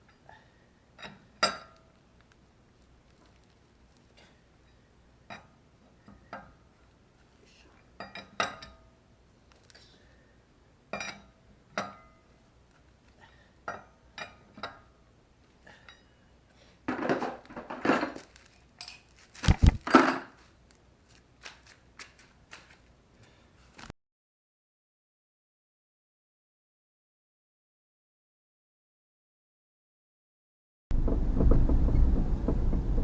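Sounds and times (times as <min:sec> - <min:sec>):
heavy knock and clatter: 0:30.9 - 0:33.0.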